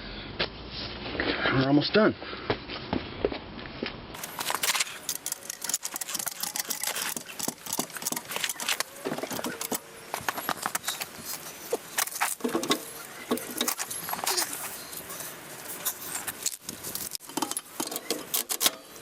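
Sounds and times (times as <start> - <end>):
hand tools and metal clattering: 4.2 - 19.0.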